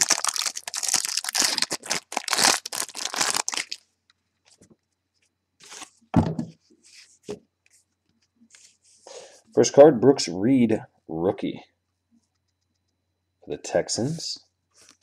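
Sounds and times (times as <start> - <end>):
wrapping crackling as torn open: 0.0 - 3.8
thump: 6.2 - 6.6.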